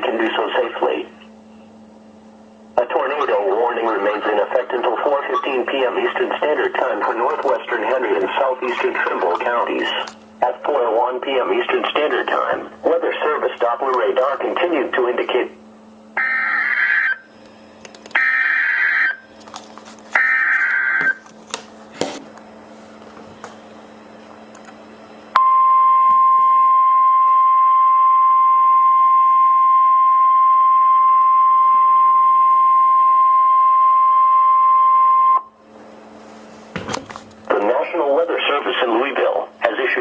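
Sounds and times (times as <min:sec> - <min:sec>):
steady high alarm tone: 0:02.8 - 0:06.0, 0:16.2 - 0:17.3, 0:18.2 - 0:19.3, 0:20.2 - 0:21.2, 0:25.4 - 0:35.6.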